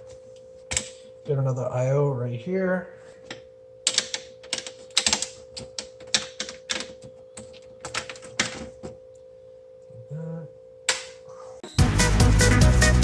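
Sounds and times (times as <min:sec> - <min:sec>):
computer parts clicking and clattering: 0:00.7 - 0:01.1, 0:03.2 - 0:09.0
faint hum: 0:08.9 - 0:11.8.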